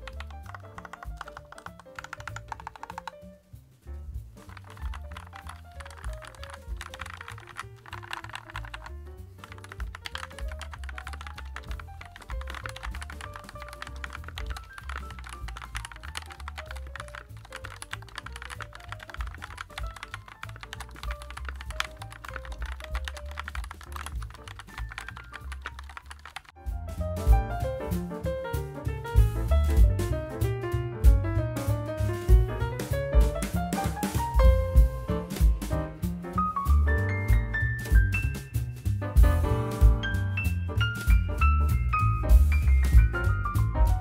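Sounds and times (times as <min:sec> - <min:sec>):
fast mechanical keyboard typing: 0:00.0 - 0:03.3, 0:04.4 - 0:26.6
background music: 0:00.0 - 0:44.0.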